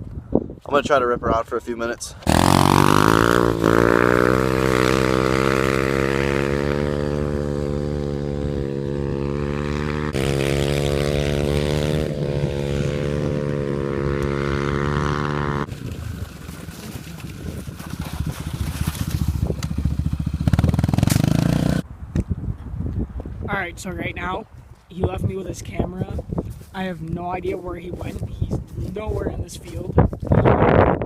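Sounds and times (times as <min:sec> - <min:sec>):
dirt bike engine revving: 0:02.2 - 0:21.8.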